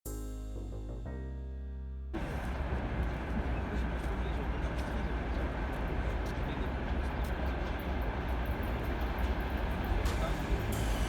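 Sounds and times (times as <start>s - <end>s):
freight train rumbling on track: 2.2s - 11.0s.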